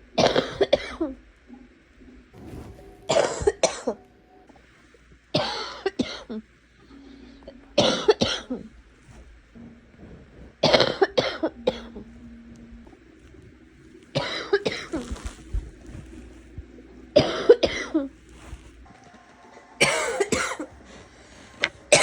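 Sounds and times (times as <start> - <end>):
person coughing: 2.5 - 4.0, 17.2 - 18.1, 19.8 - 20.8.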